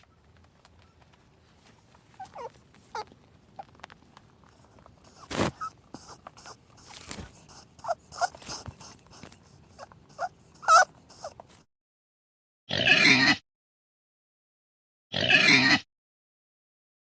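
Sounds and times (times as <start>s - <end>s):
scratching and clicking: 0.0s - 11.6s
small animal squeaking: 1.8s - 3.9s, 4.5s - 11.6s.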